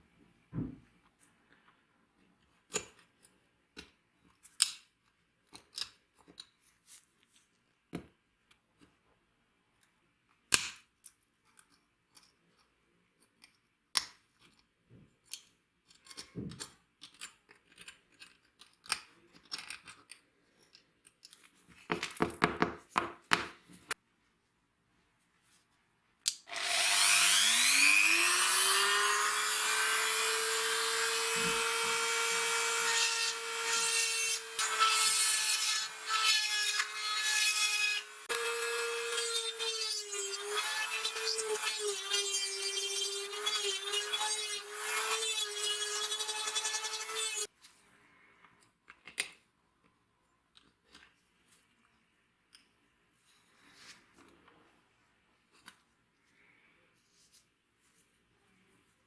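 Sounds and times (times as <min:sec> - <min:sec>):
clicks and knocks of hand work: 0:10.4 - 0:24.0
electric power tool whining: 0:26.5 - 0:47.5.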